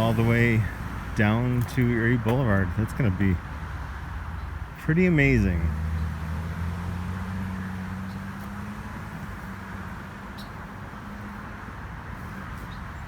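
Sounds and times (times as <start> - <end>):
road traffic rush: 0.0 - 13.0.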